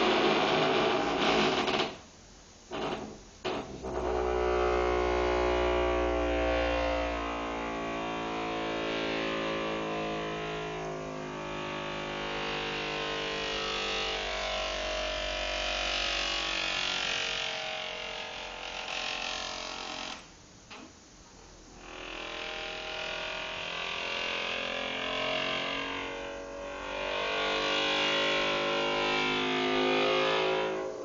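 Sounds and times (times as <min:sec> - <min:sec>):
door creaking: 0:00.0 - 0:02.1, 0:02.7 - 0:06.2, 0:12.6 - 0:21.0.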